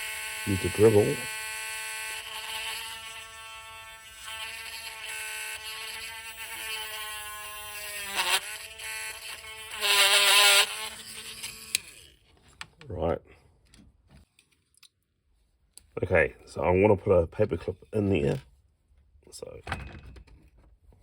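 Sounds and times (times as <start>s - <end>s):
electric drill drilling into plastic: 0.0s - 12.2s.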